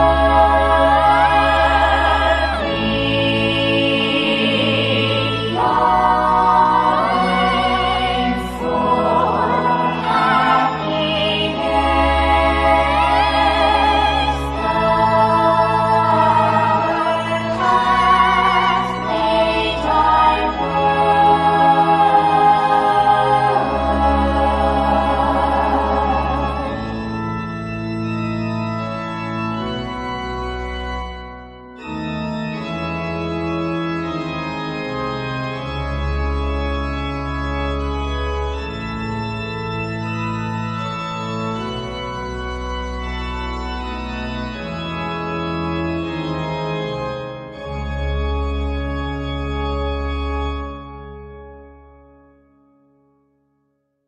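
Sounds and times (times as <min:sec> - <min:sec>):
sustained keyboard chords: 0:00.0 - 0:52.4.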